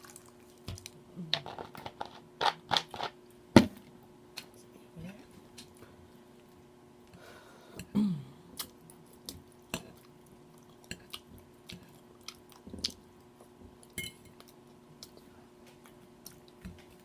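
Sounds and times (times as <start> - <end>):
woman chewing crispy food: 0.0 - 1.7, 8.6 - 17.0.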